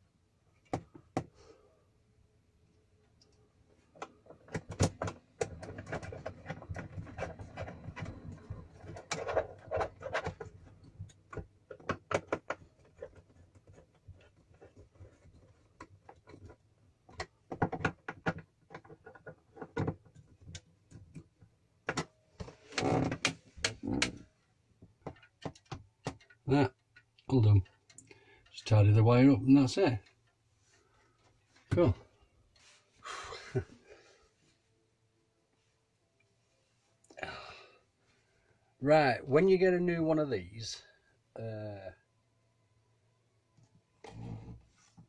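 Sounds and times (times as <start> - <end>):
wiring rustling: 3.1 - 24.3
plastic clicks and knocks: 4.0 - 24.2, 24.8 - 28.1.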